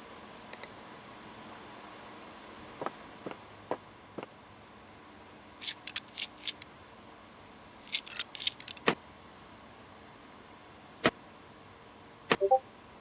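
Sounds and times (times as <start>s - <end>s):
small hard parts clicking: 5.6s - 6.6s, 7.8s - 8.9s.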